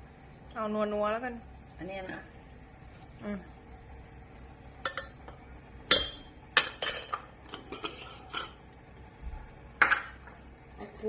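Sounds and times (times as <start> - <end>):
dishes and utensils clattering: 5.9 - 8.6.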